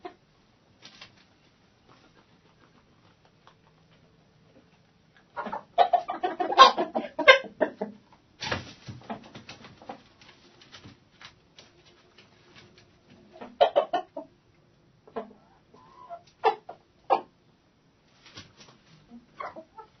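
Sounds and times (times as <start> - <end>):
chickens clucking: 0.0 - 0.3, 1.8 - 17.5, 18.2 - 20.0
chickens scratching: 0.7 - 14.1, 18.0 - 19.9.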